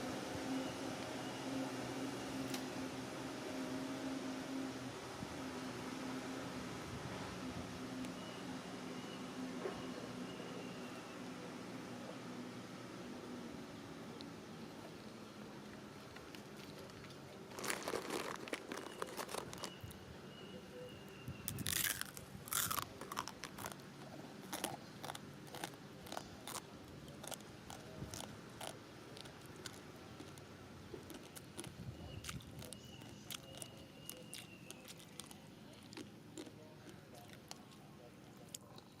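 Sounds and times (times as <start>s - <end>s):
crunching and chewing crisp food: 14.2s - 20.0s, 21.4s - 39.0s.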